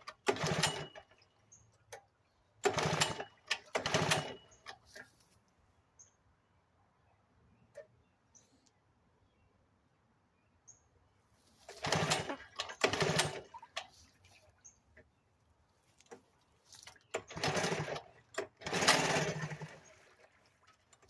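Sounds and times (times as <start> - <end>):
outboard motor pull-start cranking: 0.0 - 1.3, 1.9 - 5.1, 11.6 - 14.0, 16.8 - 21.0.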